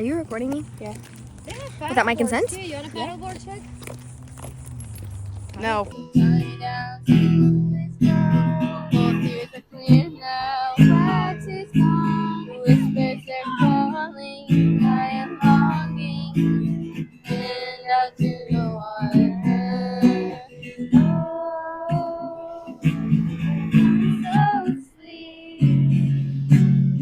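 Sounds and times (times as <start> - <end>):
acoustic guitar strumming: 0.0 - 27.0
person singing: 6.0 - 27.0.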